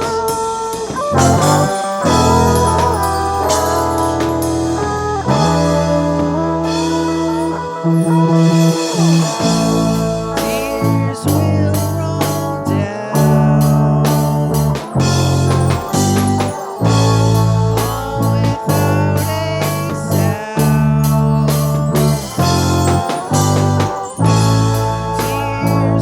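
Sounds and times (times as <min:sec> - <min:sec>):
lead guitar bending notes: 0:01.0 - 0:26.0
bass notes: 0:01.1 - 0:26.0.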